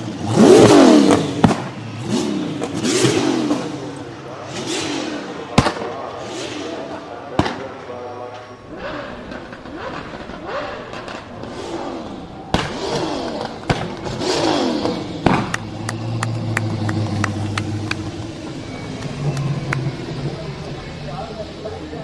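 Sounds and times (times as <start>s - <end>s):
car engine revving: 0.0s - 22.0s
exhaust pops and crackles: 7.4s - 11.7s, 12.5s - 21.0s
sharp exhaust bangs: 8.6s - 21.8s.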